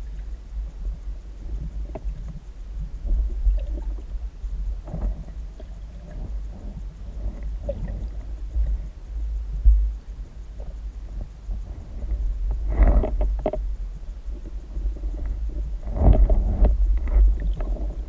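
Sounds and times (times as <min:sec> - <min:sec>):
muffled underwater rumble: 0:00.0 - 0:18.0
soft knocks and crackles: 0:10.6 - 0:13.7, 0:14.3 - 0:18.0.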